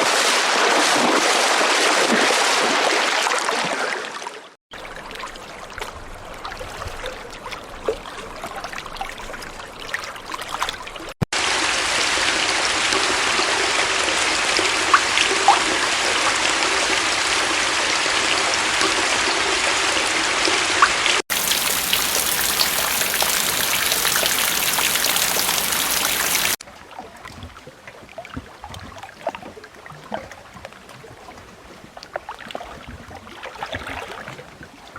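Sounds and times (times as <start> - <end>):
water splashes: 0.0 - 30.7
water rushing: 21.3 - 26.6
water trickling: 21.3 - 26.6.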